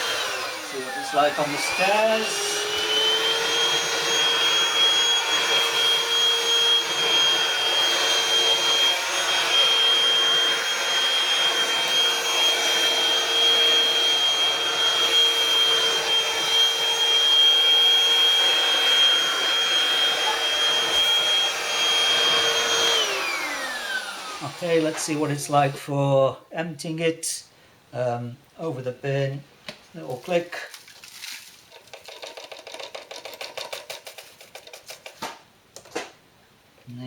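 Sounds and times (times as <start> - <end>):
stick vacuum whining: 0.0 - 25.9.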